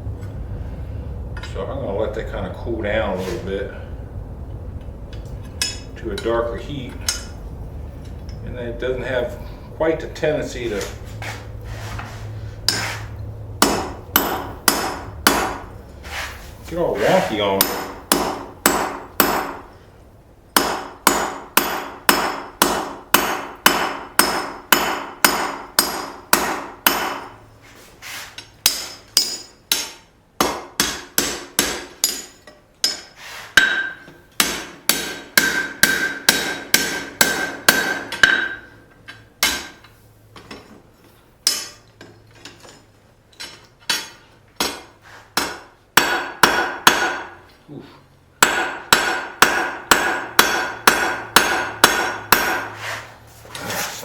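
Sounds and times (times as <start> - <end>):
hammer striking rivet on steel: 13.6 - 15.6, 17.6 - 19.6, 20.6 - 27.3, 28.6 - 39.8, 43.4 - 47.4, 48.4 - 52.7.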